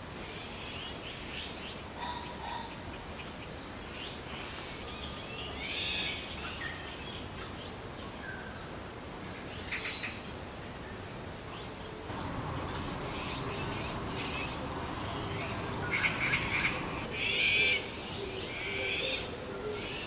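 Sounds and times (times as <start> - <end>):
low background hiss: 3.0 - 19.6
birds chirping: 12.1 - 17.3.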